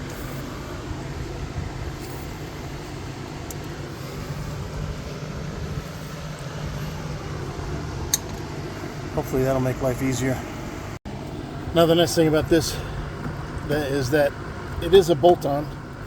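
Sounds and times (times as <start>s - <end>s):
low background rumble: 0.0s - 16.0s.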